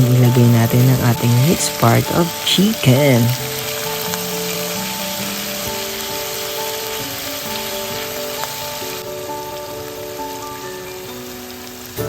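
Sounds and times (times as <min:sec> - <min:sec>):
background music with held notes: 0:00.0 - 0:12.0
chicken sizzling in a pan: 0:00.0 - 0:12.0.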